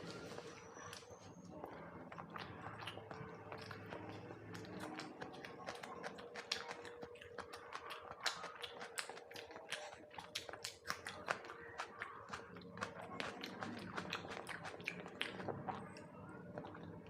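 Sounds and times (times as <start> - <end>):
person chewing: 0.0 - 17.0.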